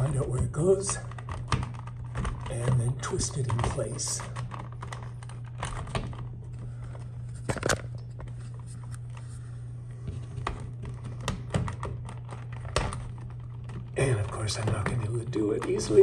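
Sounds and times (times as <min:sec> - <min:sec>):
plastic clicks and scrapes: 0:00.0 - 0:09.3
steady low hum: 0:00.0 - 0:16.0.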